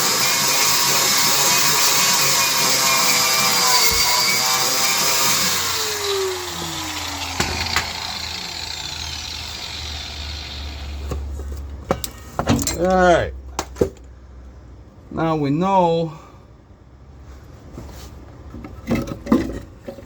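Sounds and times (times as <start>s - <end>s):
electric grinder on steel: 0.0s - 11.1s.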